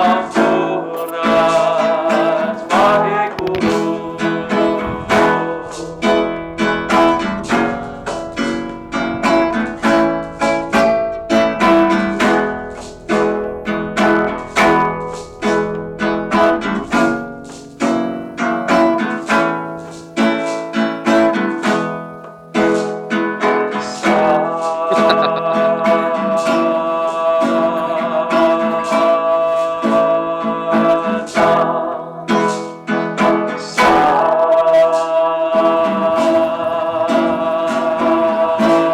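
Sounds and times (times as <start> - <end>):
acoustic guitar picking: 0.0 - 34.2
held melody line: 3.3 - 19.1, 24.9 - 25.5.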